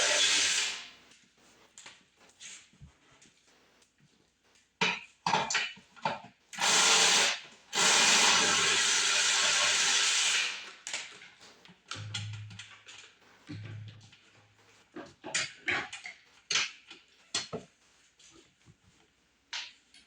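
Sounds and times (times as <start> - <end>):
power drill driving screws: 0.0 - 0.9, 6.6 - 10.7.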